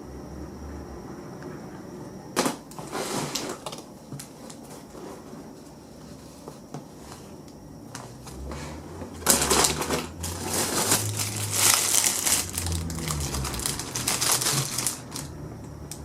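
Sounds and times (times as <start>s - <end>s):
objects rustling and clattering: 2.4s - 7.3s, 7.9s - 15.3s.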